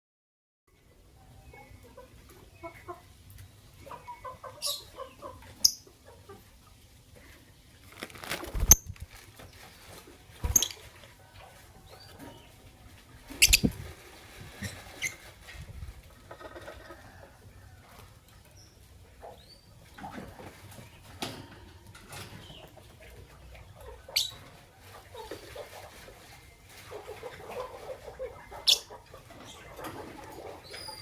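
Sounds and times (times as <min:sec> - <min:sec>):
lovebirds chirping: 0:10.4 - 0:10.9, 0:13.3 - 0:13.9.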